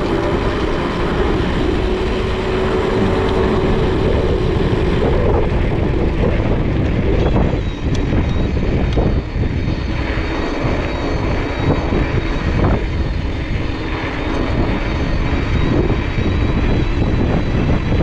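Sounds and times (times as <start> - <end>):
bike tyres rumbling: 0.0 - 13.8
wind buffeting microphone: 0.0 - 18.0.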